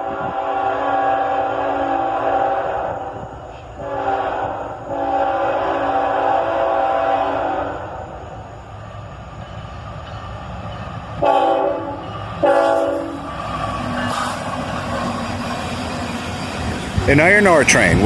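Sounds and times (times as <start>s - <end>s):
locomotive horn blasts: 0.0s - 3.2s, 3.8s - 7.9s, 11.2s - 13.2s
freight train rumble: 0.0s - 18.0s.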